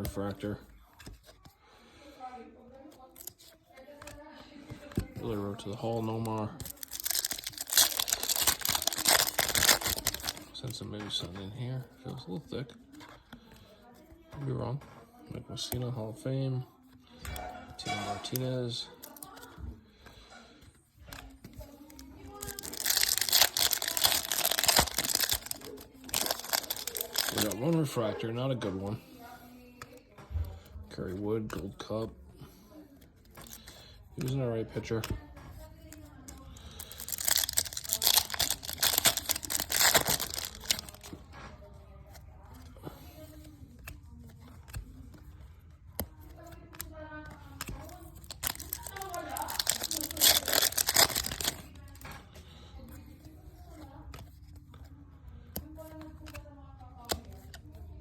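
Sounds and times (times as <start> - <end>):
cards clicking handled: 2.9 - 11.4, 21.0 - 28.0, 35.9 - 41.3, 43.0 - 52.2, 55.5 - 57.9
foil wrapper tearing and crinkling: 5.3 - 10.5, 21.6 - 27.7, 36.6 - 41.2, 47.5 - 52.1.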